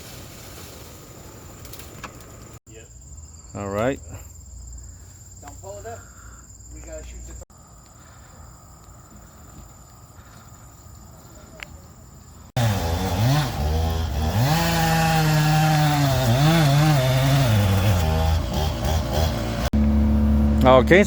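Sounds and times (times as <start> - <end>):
insect chirring: 1.2 - 12.5
chainsaw revving: 12.6 - 19.7.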